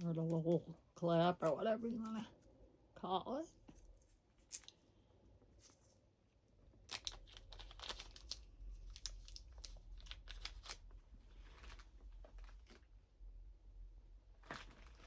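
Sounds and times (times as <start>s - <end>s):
packaging crinkling and rustling: 6.7s - 13.0s, 14.4s - 15.0s.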